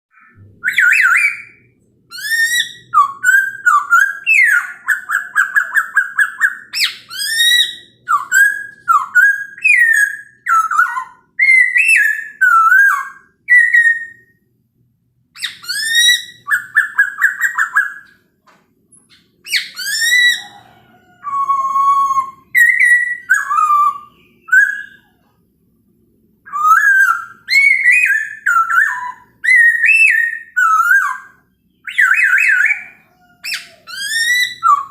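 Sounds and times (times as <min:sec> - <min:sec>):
bird singing whistles: 0:00.1 - 0:14.4, 0:15.4 - 0:18.2, 0:19.1 - 0:25.2, 0:26.5 - 0:34.9.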